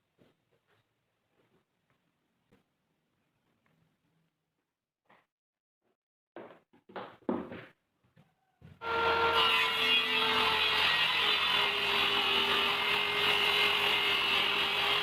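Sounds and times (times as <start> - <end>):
power tool rasping wood: 8.8 - 15.0.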